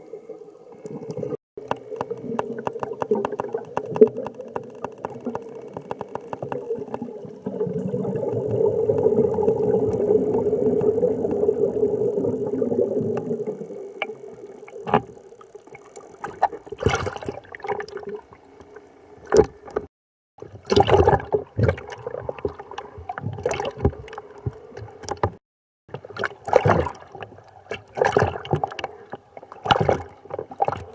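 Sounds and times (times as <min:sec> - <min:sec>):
water gurgling and bubbling: 0:00.8 - 0:18.5, 0:20.5 - 0:24.2.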